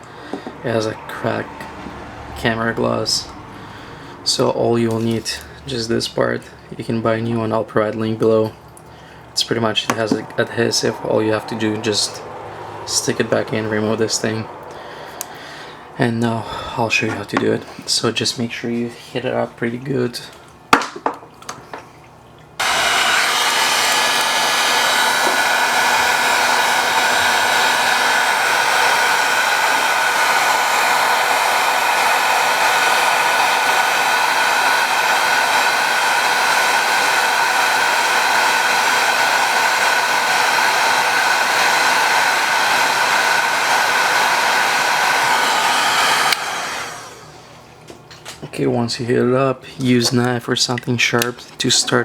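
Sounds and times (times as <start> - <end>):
hot-air blower running: 0.0 - 4.2, 9.8 - 15.4, 22.6 - 47.7.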